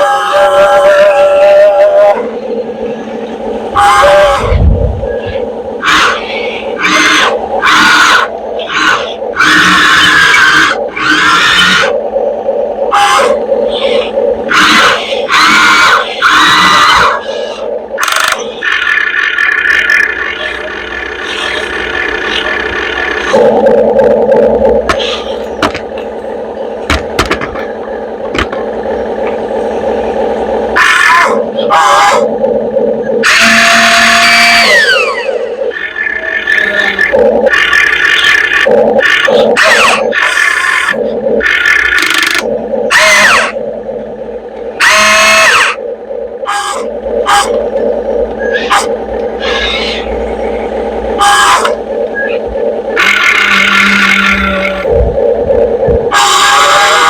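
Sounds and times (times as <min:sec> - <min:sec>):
model excavator running hum: 0:00.0 - 0:57.0
whining grinding hydraulic motor: 0:00.0 - 0:57.0
sharp clicks and knocks: 0:24.8 - 0:26.1, 0:26.8 - 0:29.4.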